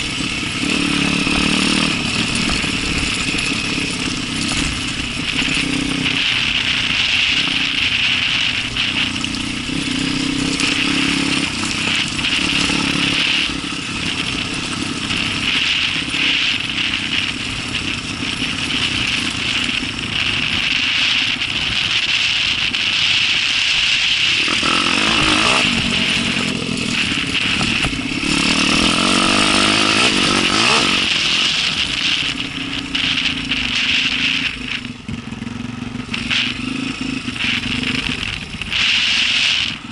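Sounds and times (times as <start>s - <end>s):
dirt bike engine under load: 0.0s - 39.9s.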